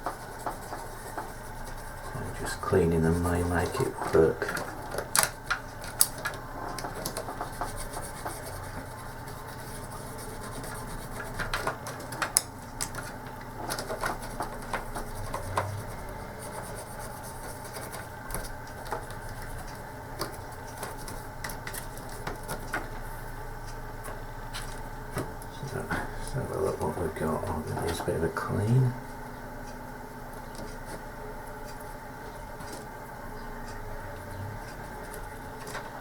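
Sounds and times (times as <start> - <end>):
steady low hum: 0.0 - 36.0
plastic parts clicking and tapping: 3.8 - 8.4, 11.2 - 16.0.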